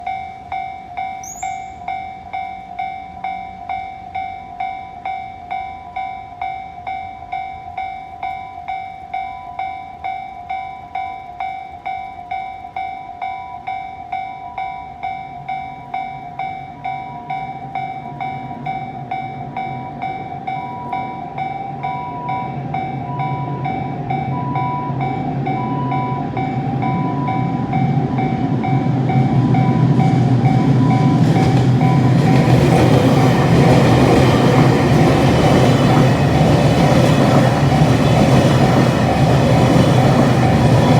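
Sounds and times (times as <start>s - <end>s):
level crossing bell clanging: 0.0s - 40.9s
train rumble: 6.8s - 40.9s.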